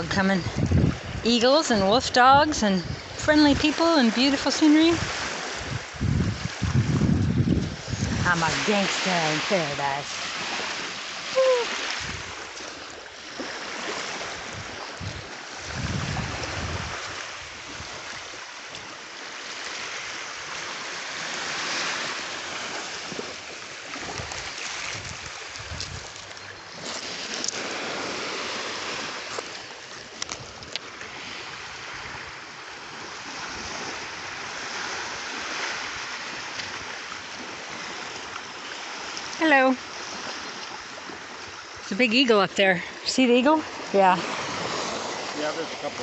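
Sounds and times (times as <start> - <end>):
wind buffeting microphone: 0.0 - 10.6, 11.3 - 12.6, 13.8 - 18.2, 24.0 - 26.2
waves washing on beach: 0.0 - 46.0.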